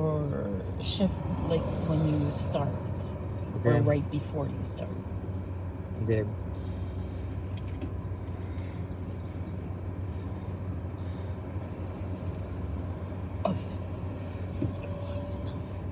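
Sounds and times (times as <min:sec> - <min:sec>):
vehicle engine droning: 0:00.0 - 0:15.9.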